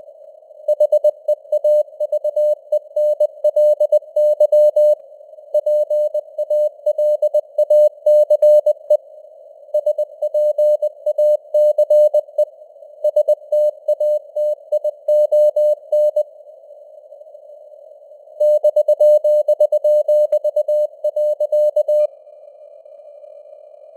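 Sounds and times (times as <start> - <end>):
faint radio noise hiss: 0.0 - 23.9
morse code tone: 0.7 - 5.0, 13.1 - 16.2, 18.4 - 22.1.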